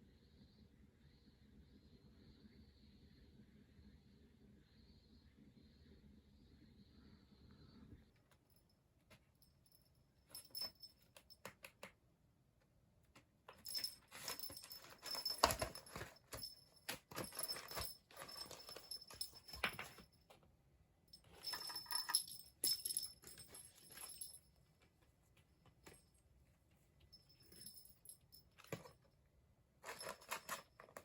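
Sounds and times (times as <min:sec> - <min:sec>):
small bell jingling: 0:09.4 - 0:11.4, 0:13.5 - 0:20.2, 0:21.2 - 0:24.6, 0:27.1 - 0:29.0, 0:29.8 - 0:31.0
rustling: 0:13.5 - 0:20.1, 0:21.2 - 0:29.0, 0:29.8 - 0:31.0.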